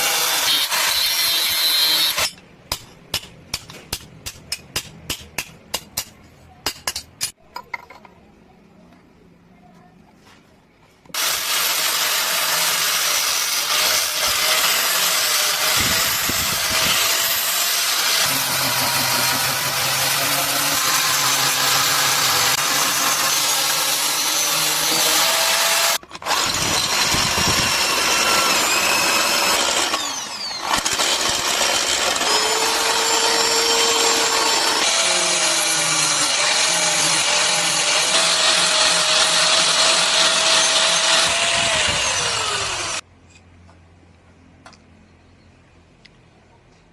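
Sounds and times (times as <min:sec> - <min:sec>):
power tool grinding metal: 0:00.0 - 0:02.4, 0:11.2 - 0:43.0.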